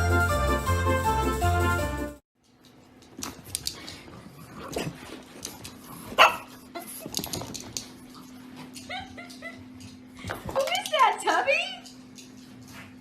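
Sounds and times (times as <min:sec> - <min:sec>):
dog barking: 0:06.2 - 0:06.5
dog yipping: 0:06.2 - 0:06.5.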